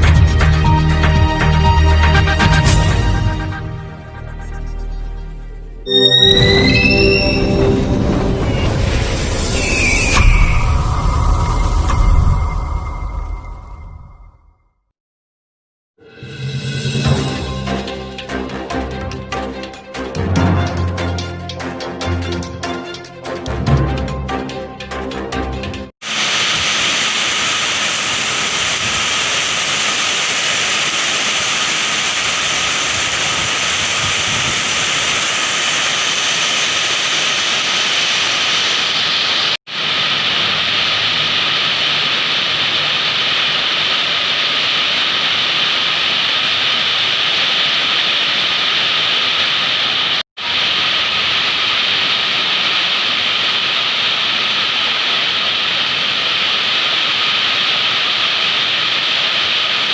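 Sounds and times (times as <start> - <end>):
heavy rain pouring: 26.0 - 59.9.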